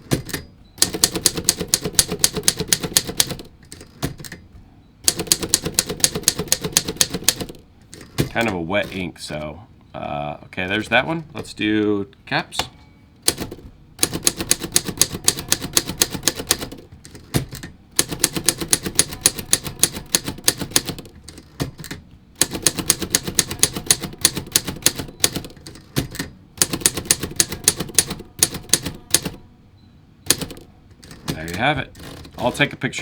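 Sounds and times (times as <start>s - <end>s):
manual typewriter typing: 0.0s - 9.5s, 13.2s - 29.4s, 30.2s - 33.0s.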